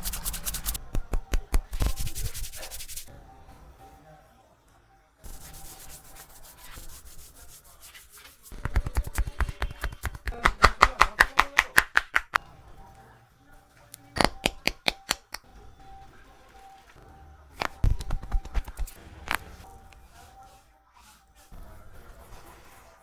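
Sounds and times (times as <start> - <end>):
hands rubbing skin and hair: 0.0 - 3.1, 5.3 - 12.4, 17.6 - 19.5
rapid hand strikes of massage: 0.0 - 3.1, 8.4 - 12.4.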